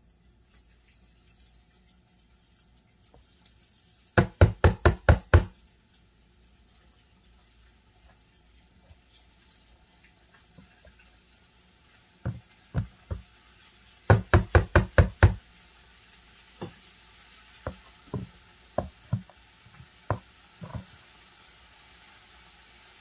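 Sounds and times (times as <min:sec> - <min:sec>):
sharp knocks: 0:04.2 - 0:05.5, 0:14.1 - 0:15.4, 0:17.7 - 0:19.3.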